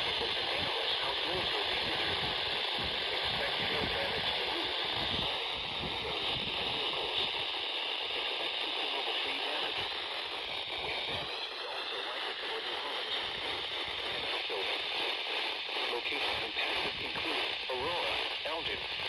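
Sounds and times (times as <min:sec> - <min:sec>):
faint voice: 0:00.0 - 0:07.3
radio static hiss: 0:00.0 - 0:19.0.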